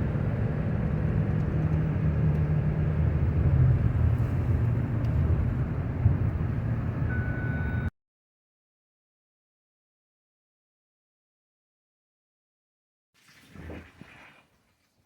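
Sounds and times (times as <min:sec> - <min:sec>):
engine and road noise rumble: 0:00.0 - 0:07.9.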